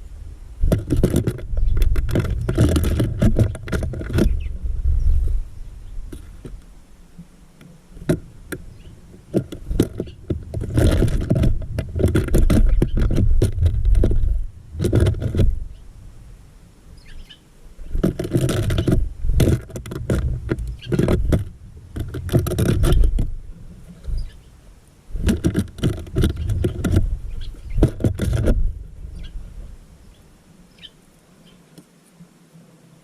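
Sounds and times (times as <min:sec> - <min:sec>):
birds scrabbling and pecking at feeder: 0:00.6 - 0:05.4, 0:07.6 - 0:15.7, 0:17.8 - 0:24.5, 0:25.1 - 0:29.4
faint bird chirps: 0:17.0 - 0:17.5, 0:30.0 - 0:31.8.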